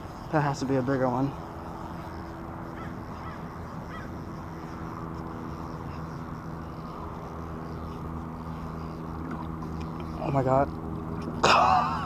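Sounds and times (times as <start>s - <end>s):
low engine hum: 0.0s - 12.0s.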